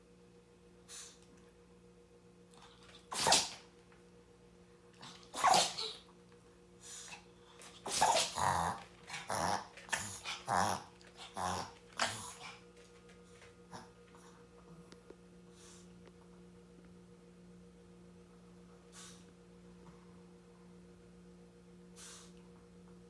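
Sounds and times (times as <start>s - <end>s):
dog sneezing: 3.0s - 3.7s, 5.0s - 6.0s, 6.9s - 8.5s.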